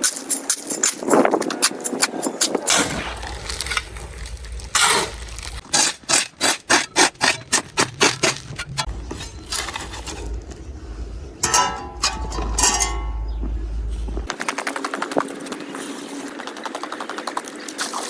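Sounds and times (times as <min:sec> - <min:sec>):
hand tool scraping strokes: 0:04.7 - 0:10.6.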